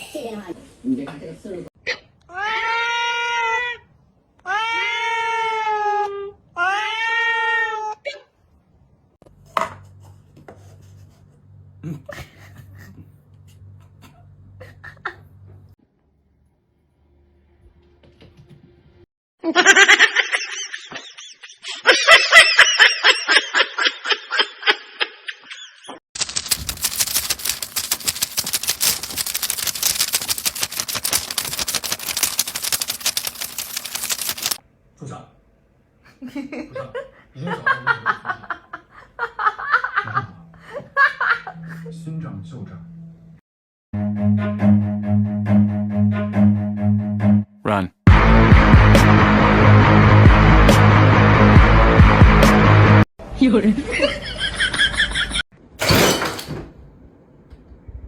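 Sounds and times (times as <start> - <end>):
rapid clicking and rattling: 26.2 - 34.6.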